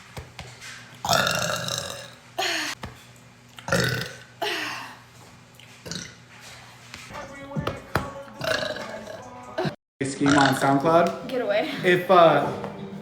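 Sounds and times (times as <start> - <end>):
woman burping: 1.1 - 2.8, 3.7 - 5.0, 8.4 - 10.6.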